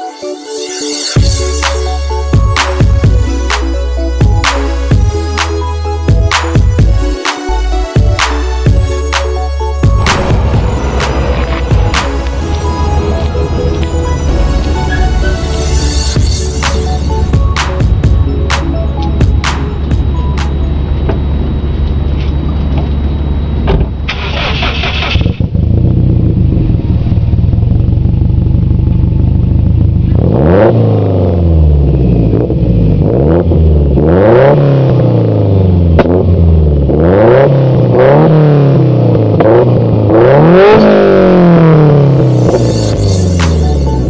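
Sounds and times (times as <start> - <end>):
car exhaust idling and revving: 1.2 - 44.0.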